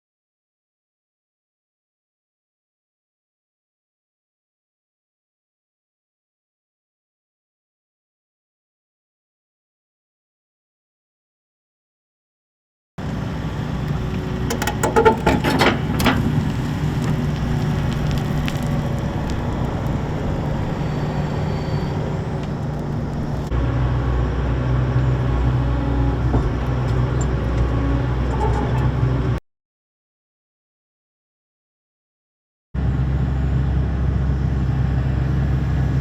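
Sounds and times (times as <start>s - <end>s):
excavator diesel engine running: 13.0s - 29.4s.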